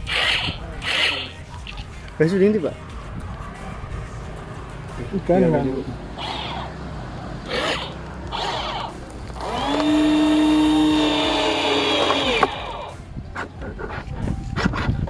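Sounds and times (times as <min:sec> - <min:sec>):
small electric motor whirring: 0:00.0 - 0:01.4, 0:06.2 - 0:06.8, 0:07.4 - 0:13.0.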